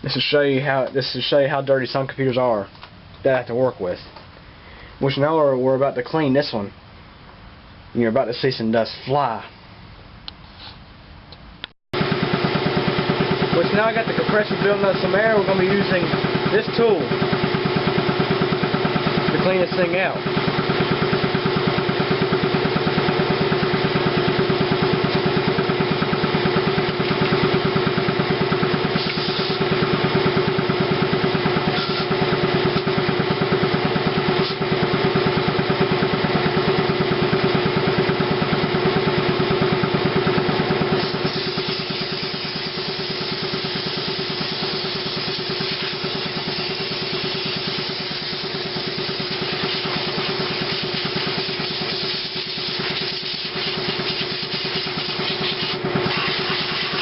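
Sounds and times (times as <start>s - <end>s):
air compressor running: 12.0s - 57.0s.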